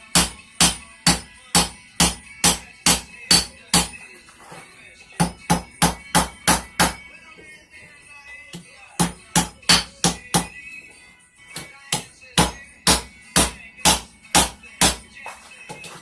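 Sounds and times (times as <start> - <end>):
hammer clanging on anvil: 0.1 - 4.0.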